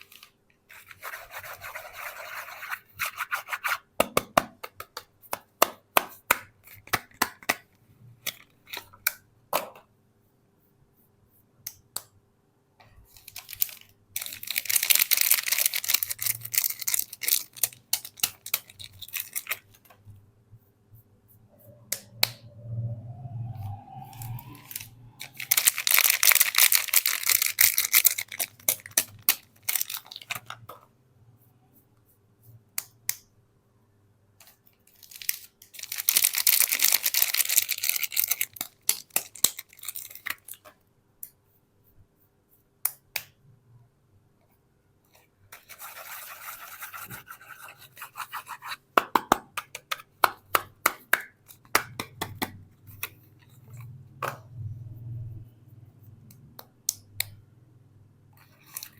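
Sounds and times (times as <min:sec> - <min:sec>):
packaging crinkling and tearing: 0:13.1 - 0:19.8, 0:24.7 - 0:30.5, 0:34.9 - 0:40.6.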